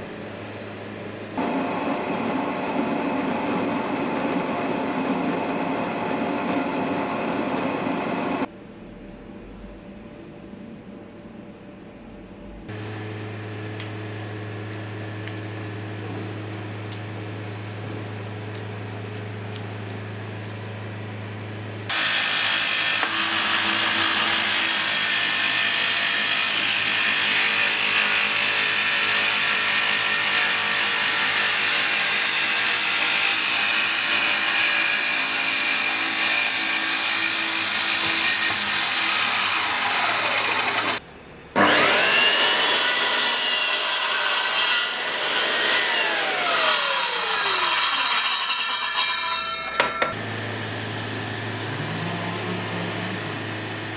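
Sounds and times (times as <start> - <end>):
power tool rasping wood: 1.4 - 8.5, 21.9 - 41.0, 41.6 - 49.1.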